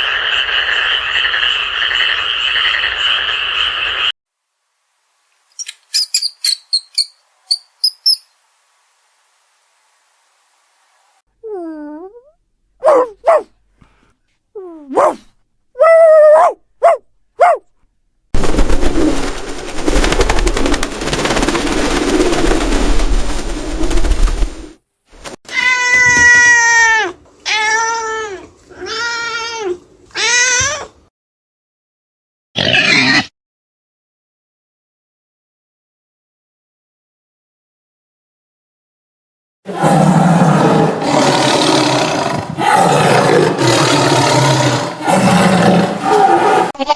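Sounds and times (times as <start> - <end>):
noisy rumbling: 18.4 - 25.3
cats meowing: 25.5 - 31.0.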